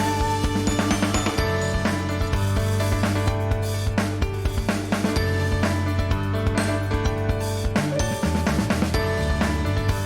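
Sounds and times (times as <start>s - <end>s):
background music with drum beat: 0.0s - 10.0s.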